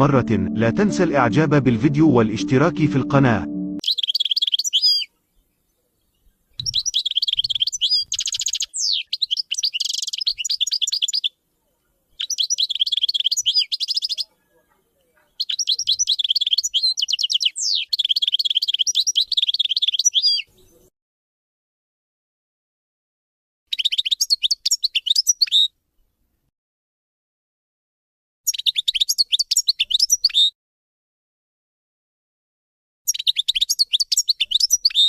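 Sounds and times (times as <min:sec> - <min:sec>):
songbird twittering song: 0:03.8 - 0:20.9, 0:23.7 - 0:25.7, 0:28.5 - 0:30.6, 0:33.1 - 0:35.0.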